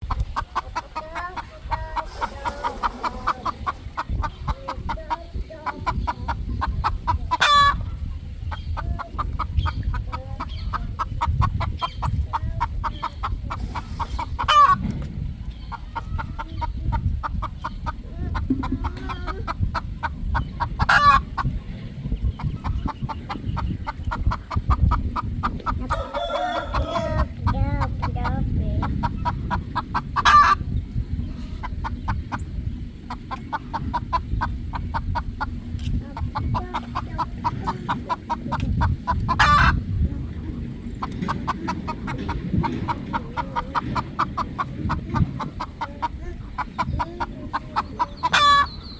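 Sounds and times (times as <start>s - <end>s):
roosters clucking: 0.0s - 48.9s
rooster calls: 25.8s - 27.3s.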